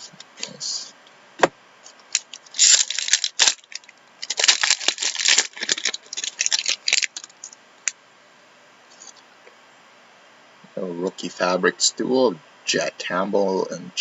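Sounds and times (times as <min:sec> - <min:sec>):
wrappers crinkling: 0:02.1 - 0:07.6.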